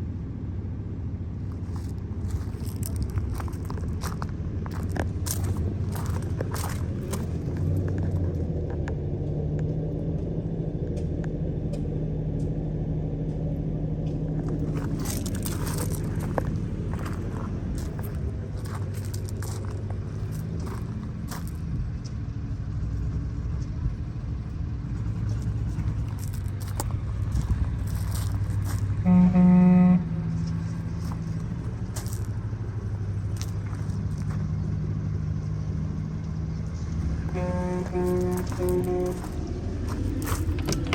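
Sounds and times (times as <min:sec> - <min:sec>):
diesel engine idling: 0:00.0 - 0:40.9
short crunches: 0:01.5 - 0:08.2, 0:14.4 - 0:21.6, 0:25.4 - 0:29.0, 0:37.7 - 0:40.9.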